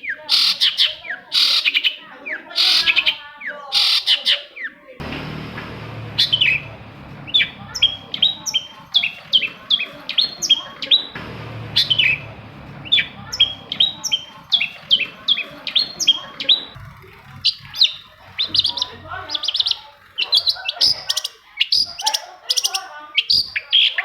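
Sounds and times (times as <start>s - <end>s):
shrike singing sharp chirps: 5.9s - 21.8s.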